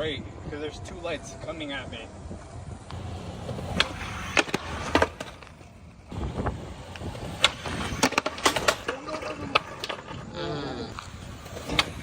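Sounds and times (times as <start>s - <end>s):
skateboard wheels rolling on concrete: 0.0s - 12.0s
skateboard clacks: 2.9s - 10.3s, 10.9s - 12.0s.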